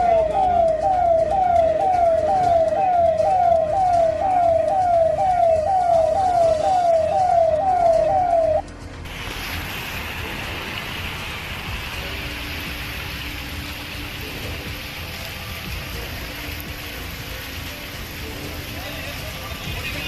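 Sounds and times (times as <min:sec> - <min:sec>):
emergency siren wailing: 0:00.0 - 0:08.7.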